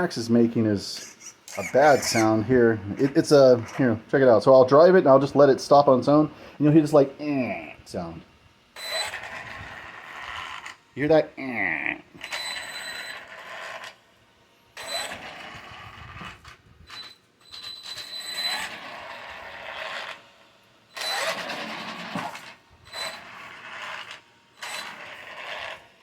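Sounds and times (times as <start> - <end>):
drivetrain grinding noise: 0.0 - 7.0, 8.8 - 11.2, 14.8 - 26.0
toy truck drivetrain whine: 1.0 - 4.0, 8.8 - 10.8, 12.1 - 14.1, 14.7 - 26.0.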